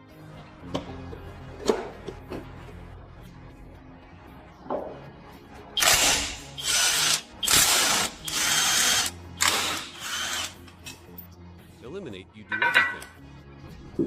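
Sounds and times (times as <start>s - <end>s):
power drill bursts: 5.8s - 10.6s.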